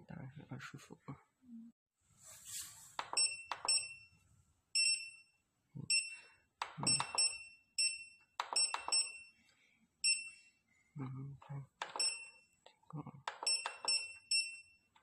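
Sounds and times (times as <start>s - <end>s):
short high-pitched beeps: 3.0s - 4.1s, 4.8s - 6.2s, 6.8s - 9.3s, 10.0s - 10.5s, 13.4s - 14.8s
sharp click of key pressed: 8.4s - 9.1s, 11.8s - 12.2s, 13.3s - 14.1s.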